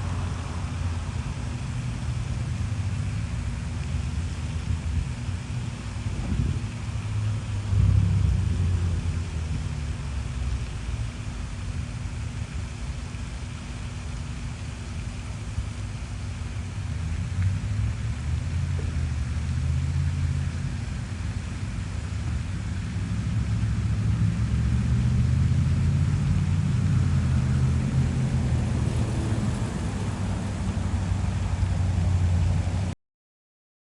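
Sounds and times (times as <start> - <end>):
low rumble: 28.4 - 32.9.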